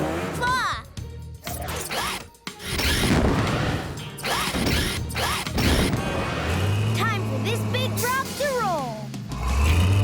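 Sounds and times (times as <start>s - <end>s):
background music: 0.0s - 10.0s
mechanical claw ratcheting and clanking: 1.4s - 3.3s, 4.2s - 6.0s.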